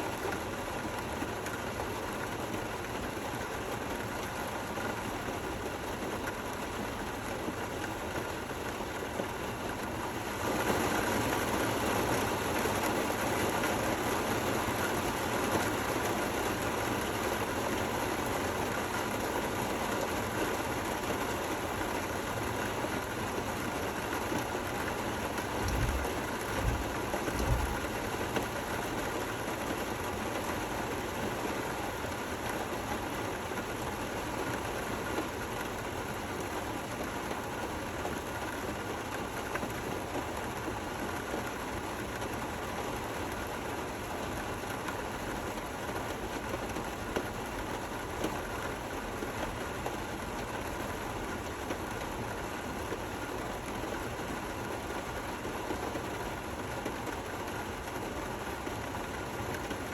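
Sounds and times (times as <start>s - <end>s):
steady rain: 0.0s - 59.9s
low thumps: 25.6s - 27.8s.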